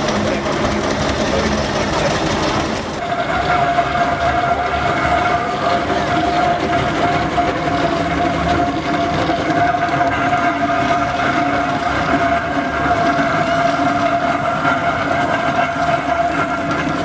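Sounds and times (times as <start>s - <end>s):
low engine rumble: 0.0s - 3.1s.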